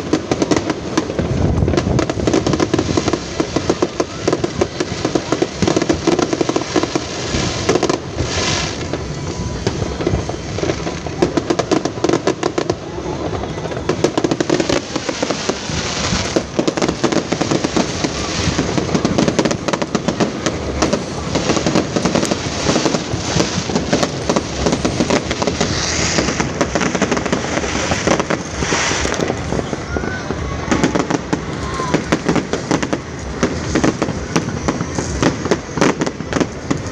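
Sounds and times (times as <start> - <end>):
crowd voices: 0.0 - 36.9
fireworks bangs and crackles: 0.0 - 36.9.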